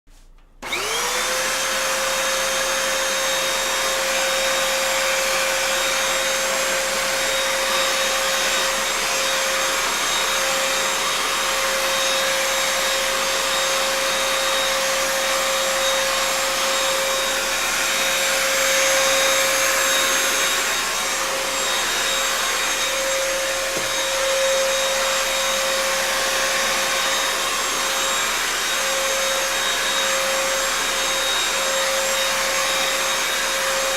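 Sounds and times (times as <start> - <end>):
vacuum cleaner running: 0.1 - 33.9.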